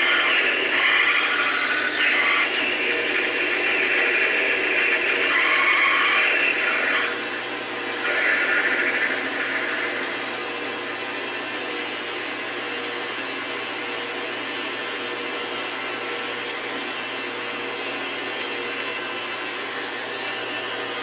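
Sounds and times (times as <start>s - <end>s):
tool scraping metal: 0.0s - 10.2s
lathe machine hum: 0.0s - 19.9s.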